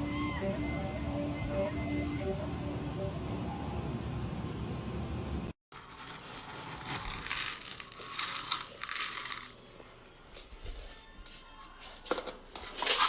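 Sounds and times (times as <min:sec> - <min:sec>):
music: 0:00.0 - 0:04.7, 0:08.9 - 0:13.0
crinkling and rustling: 0:05.7 - 0:09.6, 0:10.3 - 0:13.0.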